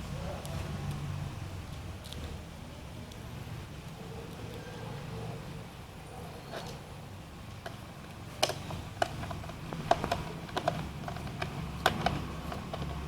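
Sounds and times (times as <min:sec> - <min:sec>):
screwdriver clicks and taps: 0:08.4 - 0:13.0.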